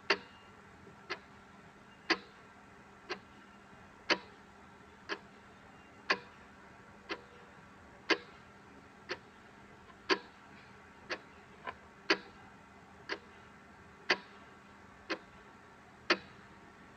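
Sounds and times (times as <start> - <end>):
faint background hiss: 0.0 - 16.9
clock ticking: 2.1 - 2.3, 4.1 - 4.3, 8.1 - 8.4, 10.0 - 10.4, 11.1 - 12.4, 14.1 - 14.4, 15.1 - 15.4, 16.1 - 16.4.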